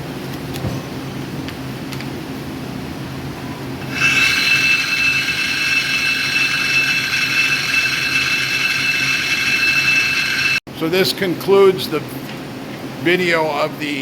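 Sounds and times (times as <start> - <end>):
high-pitched machine whine: 3.8 - 10.6
machine hum: 3.8 - 10.6.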